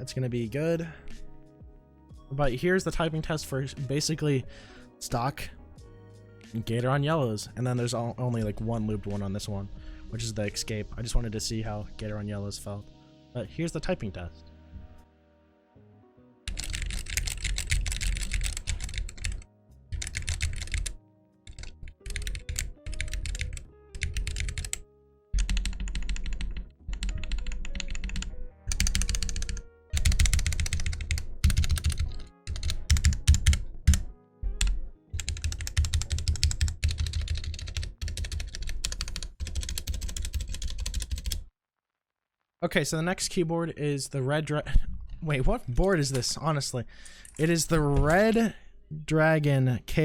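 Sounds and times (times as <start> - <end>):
mechanical keyboard typing: 16.5 - 24.8, 25.4 - 34.0, 34.6 - 41.4.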